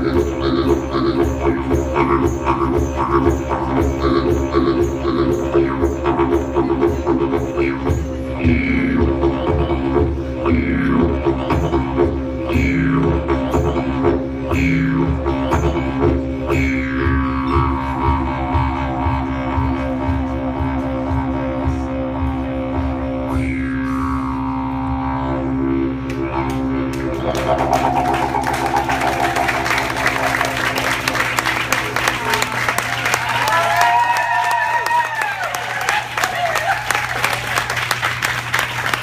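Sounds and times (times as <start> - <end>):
drone music with rhythmic pulse: 0.0 - 34.1
falling pitch sweep: 26.4 - 35.5.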